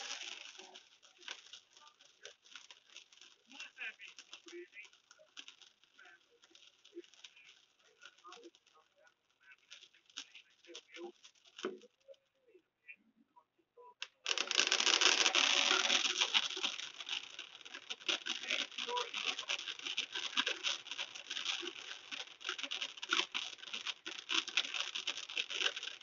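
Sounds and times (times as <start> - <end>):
fireworks crackling: 0.0 - 12.4, 14.0 - 26.0.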